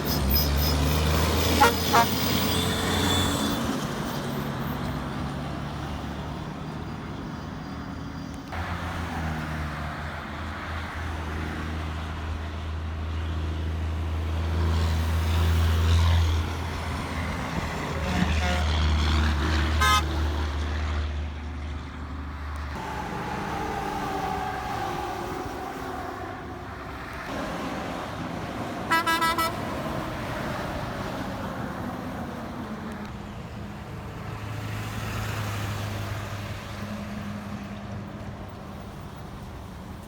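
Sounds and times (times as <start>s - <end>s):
trucks passing on highway: 0.0s - 40.0s
vehicle horn blasts: 1.5s - 3.5s, 18.0s - 18.8s, 19.8s - 20.2s, 28.9s - 29.7s.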